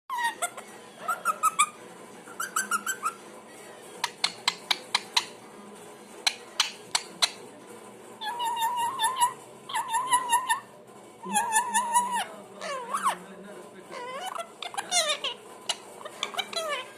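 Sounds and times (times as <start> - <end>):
parrot squeaky chirps: 0.1 - 3.2, 4.0 - 5.4, 8.2 - 13.2, 13.9 - 16.9.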